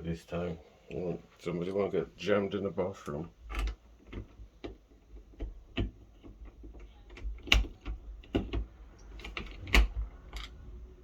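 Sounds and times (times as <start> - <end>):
door lock hardware clicking: 3.4 - 10.6.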